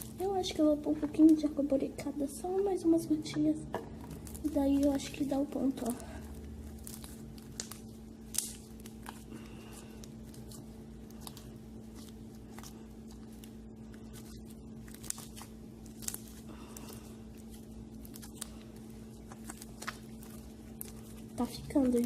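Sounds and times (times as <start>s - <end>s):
slime sticky clicks and crackles: 4.0s - 9.3s, 10.0s - 21.3s.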